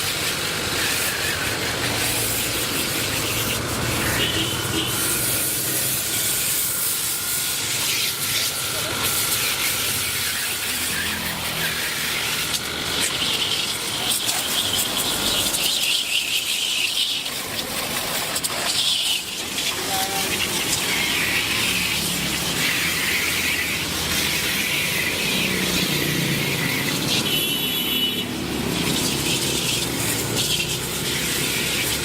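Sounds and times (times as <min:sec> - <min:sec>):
loud hissing with squeal: 0:00.0 - 0:32.0.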